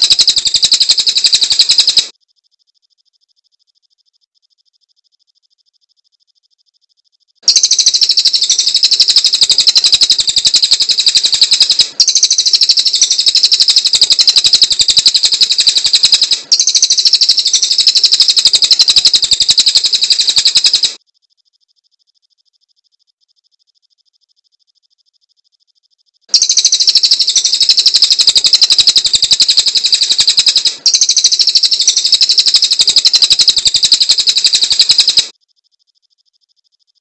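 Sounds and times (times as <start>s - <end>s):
songbird chattering song: 0.0s - 2.1s, 7.4s - 21.0s, 26.4s - 35.3s.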